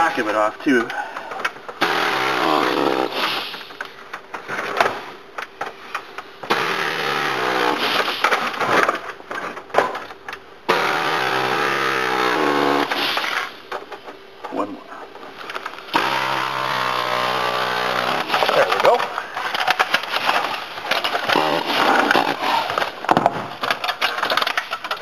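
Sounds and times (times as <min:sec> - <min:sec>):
motor-driven cutting tool: 0:01.8 - 0:03.6, 0:06.5 - 0:08.4, 0:10.7 - 0:13.5, 0:15.9 - 0:19.0, 0:19.9 - 0:23.0.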